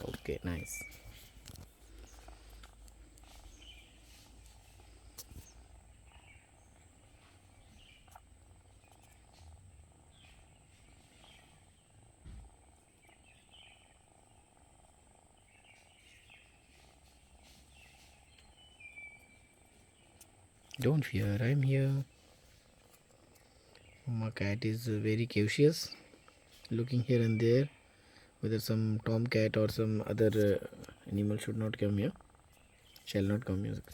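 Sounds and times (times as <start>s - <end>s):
kittens chirping: 0.0s - 24.1s
kittens purring: 0.0s - 33.9s.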